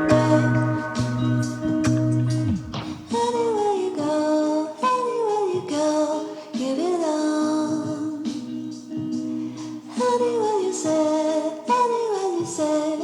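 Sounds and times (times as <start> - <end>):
sustained pop chords: 0.0 - 3.5
woman singing wordless melody: 0.0 - 13.0.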